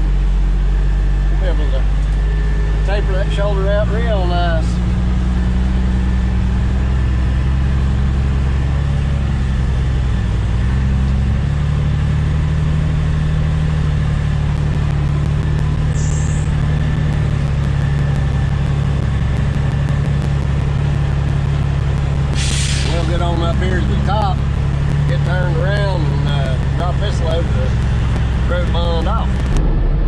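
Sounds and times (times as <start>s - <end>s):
truck engine climbing: 0.0s - 30.0s
faint regular ticking: 14.1s - 29.6s.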